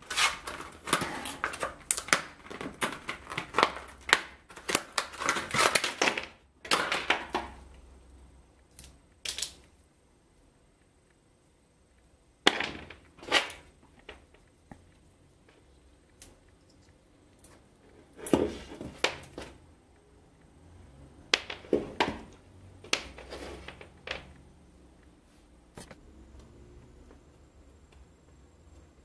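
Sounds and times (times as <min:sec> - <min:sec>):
packaging clicking and crackling: 0:00.0 - 0:07.6.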